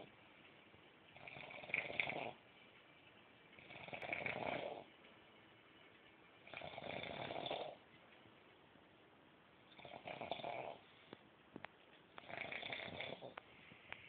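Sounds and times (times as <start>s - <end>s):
person snoring: 3.6s - 4.9s, 6.5s - 7.8s, 12.2s - 13.4s.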